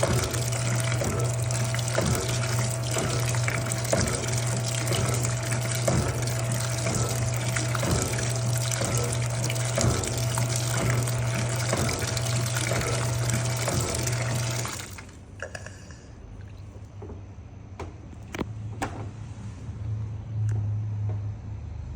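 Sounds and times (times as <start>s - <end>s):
water pouring into drum: 0.0s - 15.4s
steady low hum: 0.0s - 18.7s.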